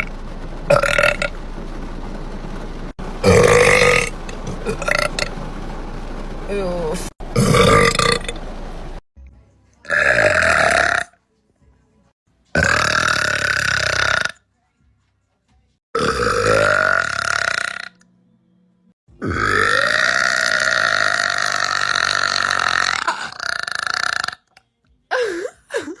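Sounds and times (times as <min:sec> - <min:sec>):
woman burping: 0:19.2 - 0:24.4.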